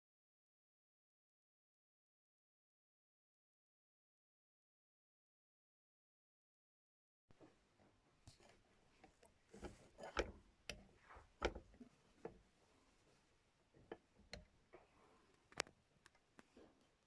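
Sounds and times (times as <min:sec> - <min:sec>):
light clicks and knocks: 0:07.4 - 0:16.8.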